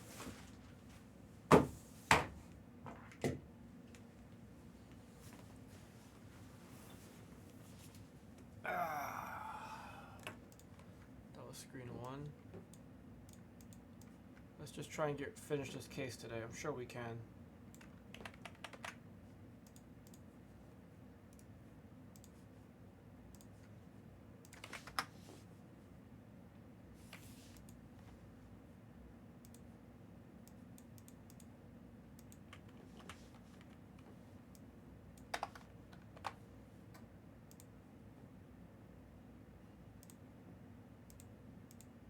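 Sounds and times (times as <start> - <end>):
faint low hum: 2.5 - 42.0
faint clicks: 10.2 - 10.8, 36.9 - 37.7, 40.0 - 40.2, 41.1 - 41.9
computer keyboard keystrokes: 17.7 - 19.0, 24.4 - 25.1, 32.2 - 36.4.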